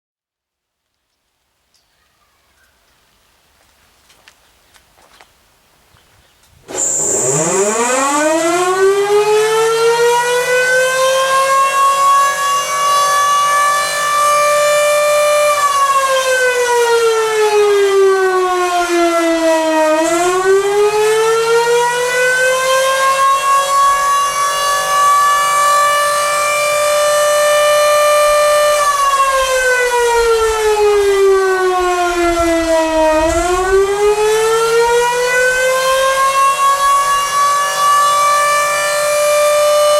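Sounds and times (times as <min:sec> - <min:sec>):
siren squeaking: 0:06.7 - 0:16.9, 0:18.6 - 0:39.9
civil defense siren wailing: 0:06.7 - 0:39.9.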